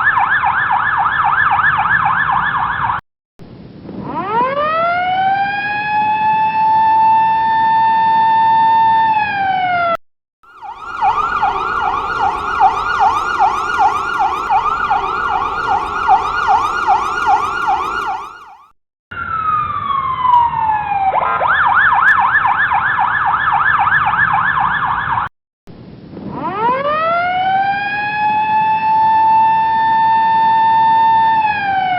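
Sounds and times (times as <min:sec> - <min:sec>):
siren rapid warble: 0:10.4 - 0:24.9
ambulance siren wailing: 0:10.4 - 0:25.2.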